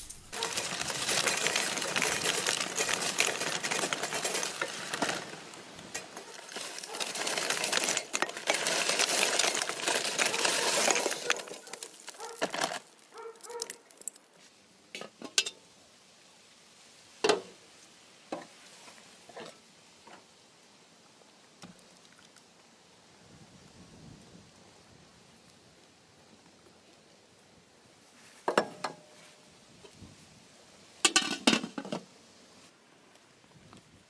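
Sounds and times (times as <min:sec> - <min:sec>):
scraping or stirring in dish: 0:00.1 - 0:14.1.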